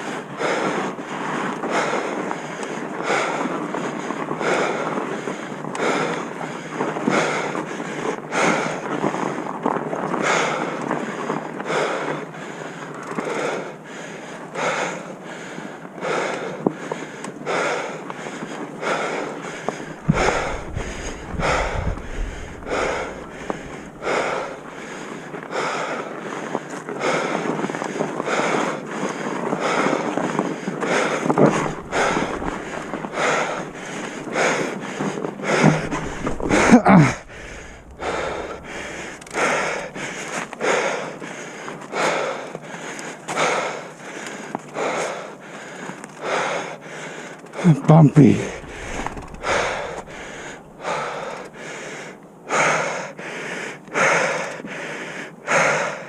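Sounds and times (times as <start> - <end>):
person breathing hard: 0.0 - 9.4, 10.2 - 56.0
low rumble: 19.8 - 25.0, 31.4 - 34.6, 35.4 - 40.6, 48.4 - 51.6.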